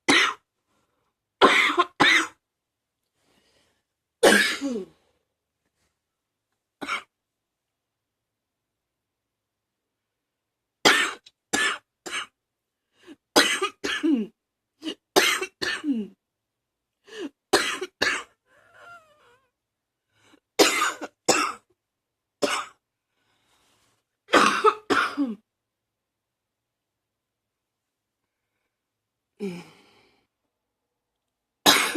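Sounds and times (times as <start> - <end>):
person coughing: 1.4 - 2.4, 4.2 - 5.0, 13.4 - 16.2, 17.2 - 19.0, 20.6 - 21.7, 24.3 - 25.4, 31.7 - 31.9.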